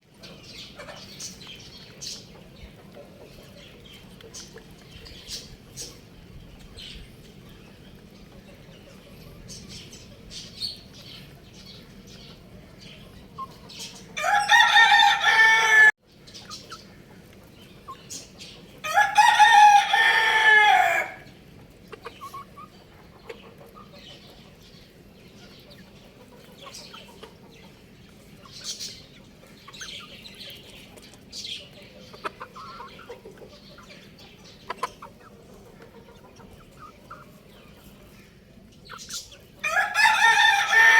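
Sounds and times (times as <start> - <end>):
chick peeps and clucks: 0.0 - 40.9
rooster crowing: 14.2 - 16.0, 18.8 - 21.3, 39.6 - 40.9.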